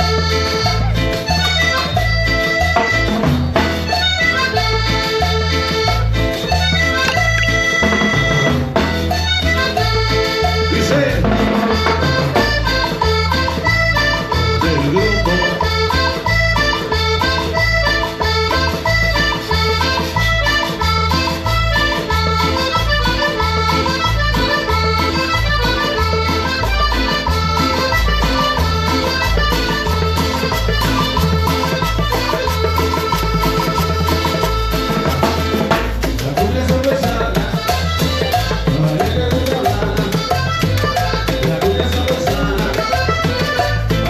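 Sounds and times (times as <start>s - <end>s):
accordion melody: 0.0s - 44.0s
latin dance band playing: 0.0s - 44.0s
rhythmic bass beat: 0.0s - 44.0s.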